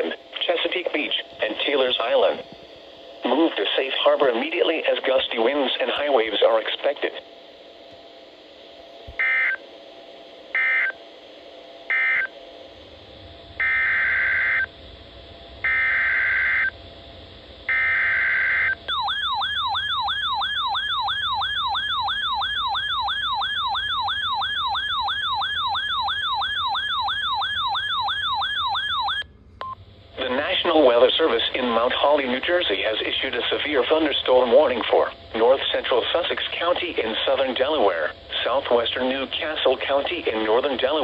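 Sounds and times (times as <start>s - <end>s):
warbling siren-like alert tone: 11.9s - 12.3s, 13.6s - 14.7s, 15.7s - 16.7s, 17.7s - 29.2s.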